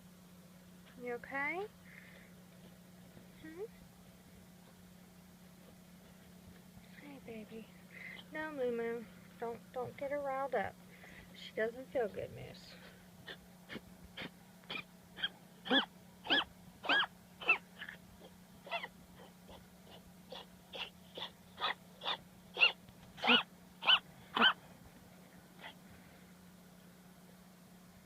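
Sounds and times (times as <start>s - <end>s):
dog wheezing squeaks: 13.3s - 18.0s, 18.6s - 24.6s.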